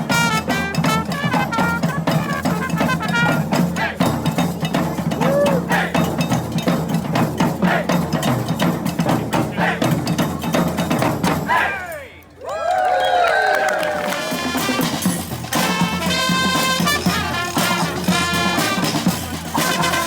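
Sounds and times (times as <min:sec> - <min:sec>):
horn notes: 0:00.0 - 0:04.2, 0:14.0 - 0:20.0
rapid drum strikes: 0:00.0 - 0:11.7, 0:14.2 - 0:20.0
brass band playing: 0:00.0 - 0:12.1, 0:14.0 - 0:20.0.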